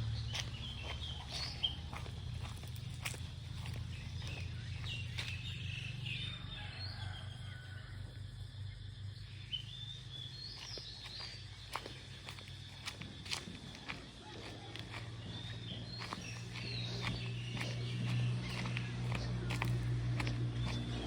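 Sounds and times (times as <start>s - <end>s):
birds chirping and calling: 0.0s - 7.0s, 9.2s - 21.0s
steady low rumble: 11.1s - 21.0s.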